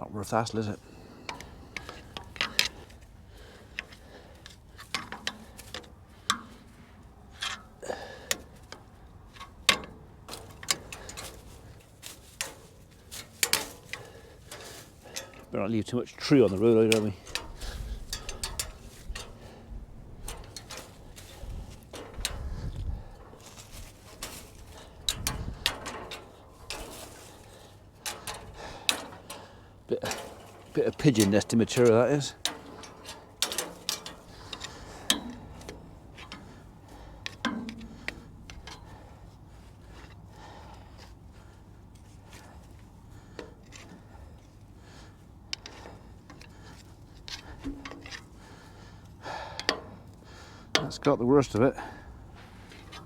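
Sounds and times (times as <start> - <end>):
twigs snapping and knocking: 0.8 - 6.8, 7.4 - 15.6, 16.2 - 51.7.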